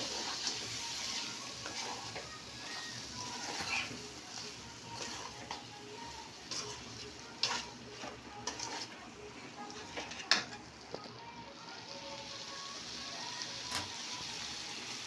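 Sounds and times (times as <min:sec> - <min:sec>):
food sizzling in a frying pan: 0:00.0 - 0:15.0
spoon scraping and knocking pan: 0:01.2 - 0:11.0.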